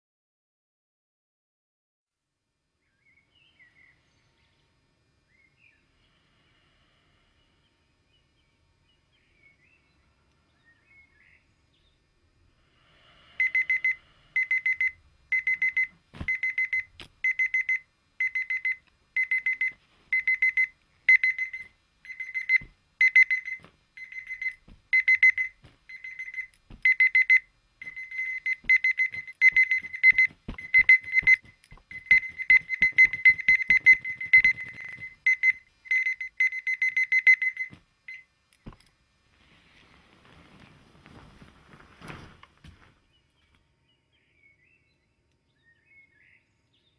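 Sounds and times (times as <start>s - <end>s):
alarm clock beeping: 13.4s - 38.3s
knocks: 28.6s - 35.2s.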